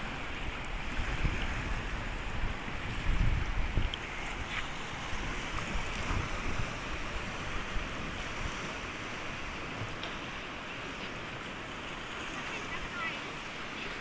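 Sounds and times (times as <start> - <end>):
wind buffeting microphone: 0.0 - 10.0
sea waves washing onto beach: 0.0 - 14.0.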